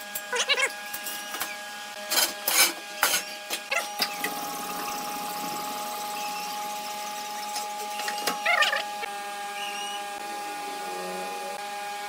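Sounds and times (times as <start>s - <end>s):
wood lathe humming: 4.2s - 8.0s.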